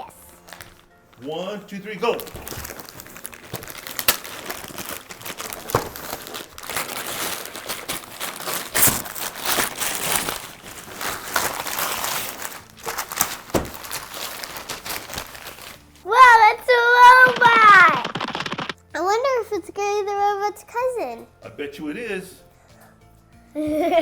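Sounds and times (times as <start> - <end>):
paper tearing and crumpling: 2.2 - 15.9, 16.9 - 18.8.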